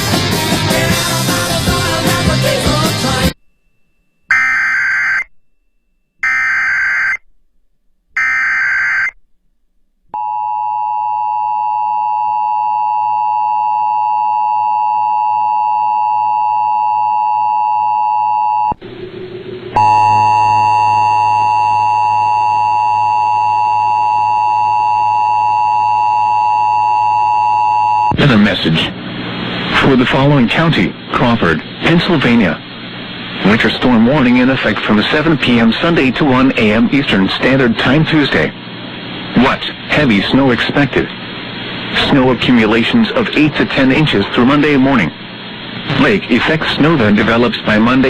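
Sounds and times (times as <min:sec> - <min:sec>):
screeching digital data bursts: 0:04.3 - 0:05.3
steady alert tone: 0:19.4 - 0:22.8
radio static: 0:28.1 - 0:48.0.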